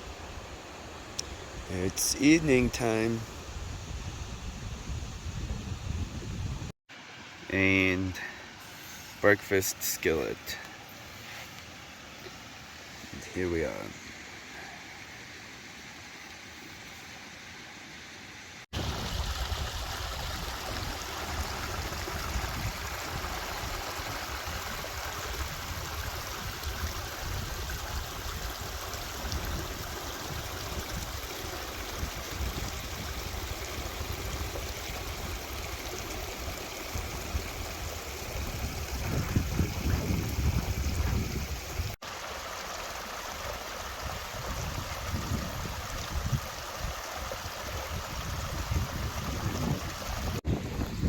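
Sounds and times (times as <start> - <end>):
faint hiss: 0.0 - 33.1
wind rumbling on microphone: 1.2 - 6.7, 18.8 - 42.0, 43.9 - 51.0
mountain stream rushing: 6.9 - 51.0.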